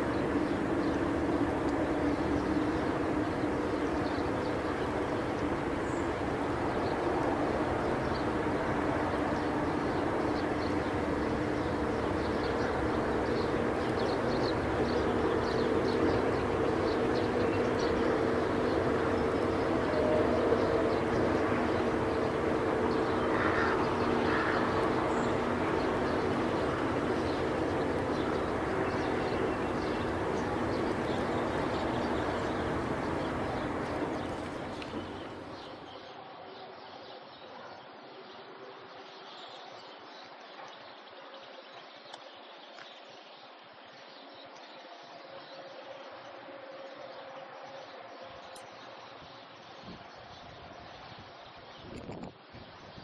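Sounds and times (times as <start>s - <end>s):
low droning rumble: 0.0s - 35.9s
low hum of steady tones: 0.0s - 42.6s.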